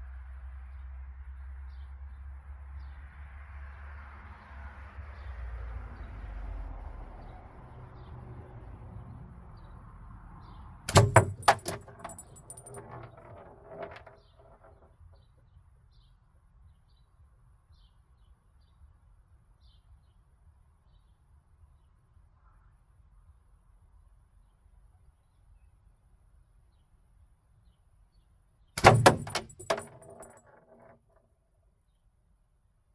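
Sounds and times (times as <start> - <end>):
metallic clattering and jingling: 10.9 - 14.9, 28.8 - 30.9.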